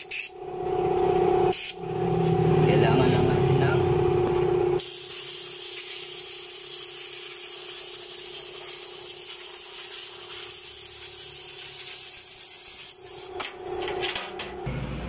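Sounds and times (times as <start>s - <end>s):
air compressor humming: 0.0s - 15.0s
compressed air hissing: 1.5s - 1.8s, 4.8s - 13.3s.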